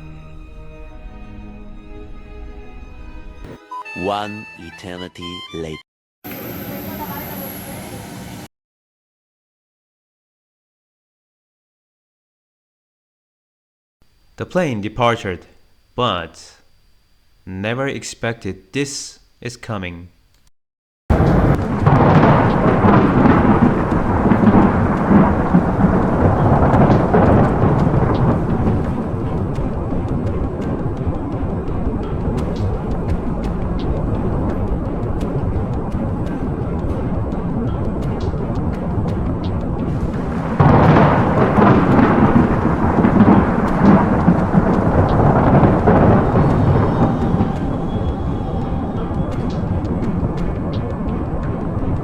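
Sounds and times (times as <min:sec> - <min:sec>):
loud thunder rumbling: 0:21.1 - 0:52.0
steady background drone: 0:21.1 - 0:52.0.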